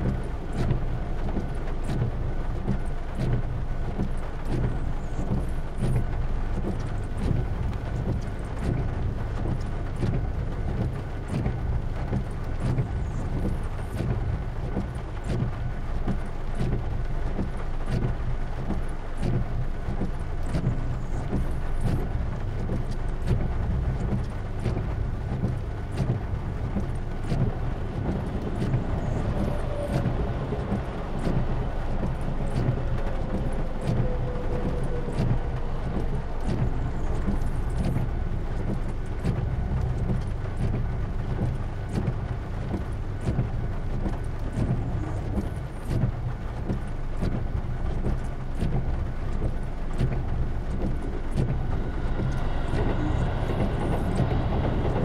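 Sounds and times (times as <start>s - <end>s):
rain drops ticking: 0.0s - 55.0s
steady rain rumbling: 0.0s - 55.0s
faint falling whine: 51.1s - 55.0s.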